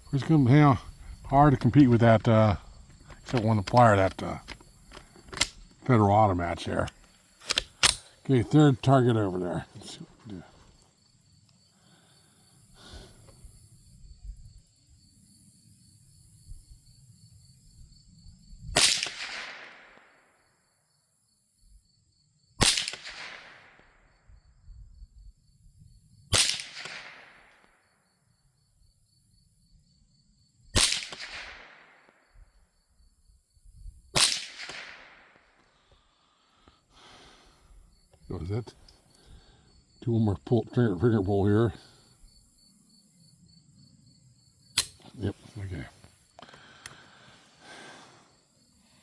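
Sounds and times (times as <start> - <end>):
rifle shots: 18.8 - 20.1, 22.6 - 24.0, 26.3 - 27.7, 30.8 - 32.2, 34.2 - 35.6.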